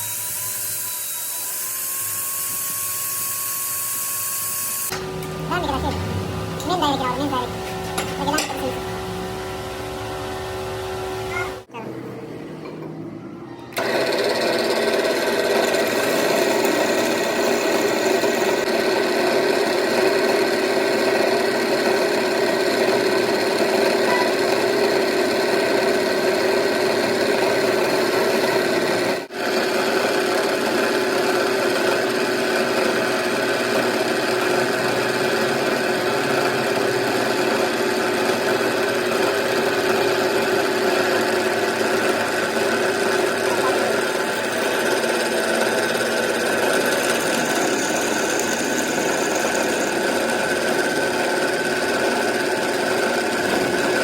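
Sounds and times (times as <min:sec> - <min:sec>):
machine tool cutting metal: 0:00.0 - 0:08.8, 0:31.5 - 0:54.0.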